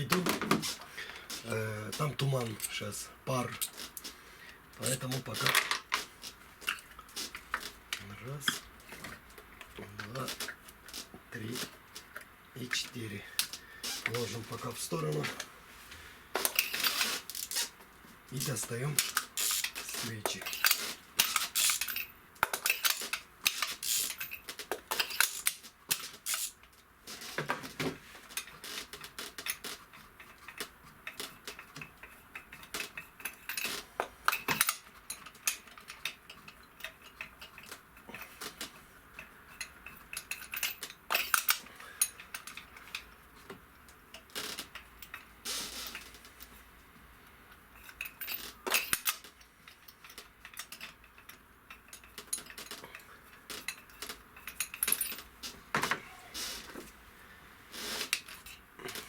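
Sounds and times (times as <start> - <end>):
metal tools and spark plugs clinking: 16.4 - 17.5, 18.4 - 26.6, 29.4 - 43.2, 47.7 - 55.9.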